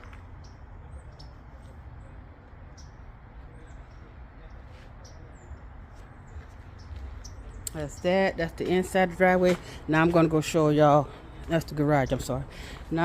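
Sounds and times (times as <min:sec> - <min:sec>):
small birds chirping: 0:00.0 - 0:09.0.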